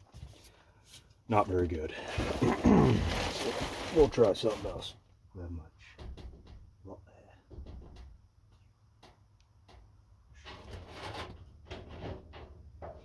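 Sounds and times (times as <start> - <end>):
rustling: 0.0 - 5.0
faint knocks and clicks: 7.5 - 10.0.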